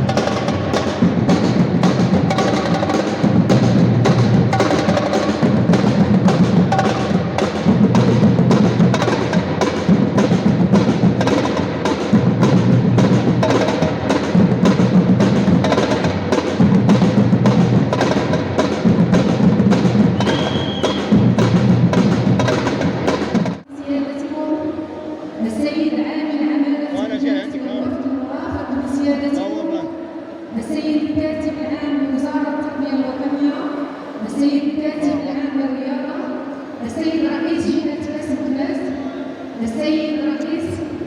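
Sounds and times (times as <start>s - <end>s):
percussion music with steady drum beat: 0.0s - 23.6s.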